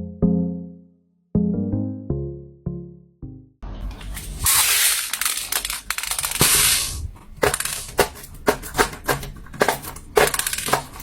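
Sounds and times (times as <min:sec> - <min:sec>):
crackling and crunching: 0:04.0 - 0:11.0.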